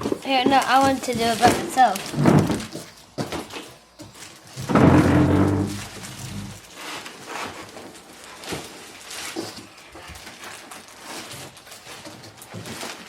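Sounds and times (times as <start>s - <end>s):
cardboard box rustling and knocking: 0.0s - 3.5s, 4.6s - 6.6s.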